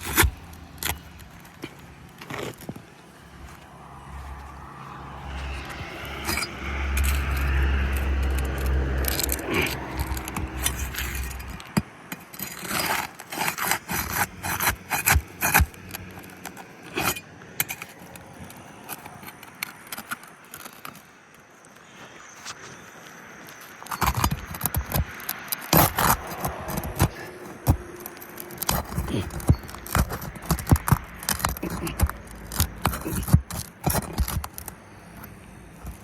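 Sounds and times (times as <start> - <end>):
pry bar scraping metal nails: 0.0 - 2.8, 5.6 - 21.1, 23.5 - 36.0
low engine rumble: 3.1 - 11.8.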